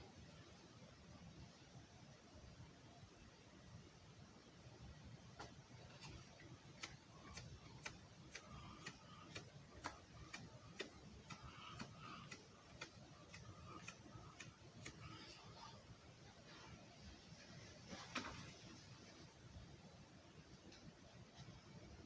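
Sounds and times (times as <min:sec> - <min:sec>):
faint regular ticking: 0:05.4 - 0:16.1.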